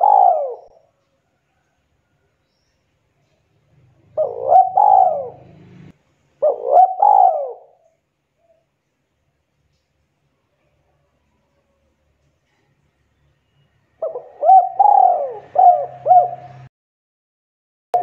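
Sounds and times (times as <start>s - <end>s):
dove cooing: 0.0s - 0.9s, 3.8s - 8.6s, 14.0s - 16.7s.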